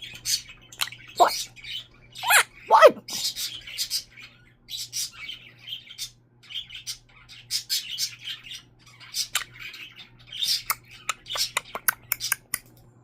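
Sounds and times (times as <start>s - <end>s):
parrot chattering: 0.8s - 1.5s, 2.2s - 3.4s, 10.5s - 12.6s.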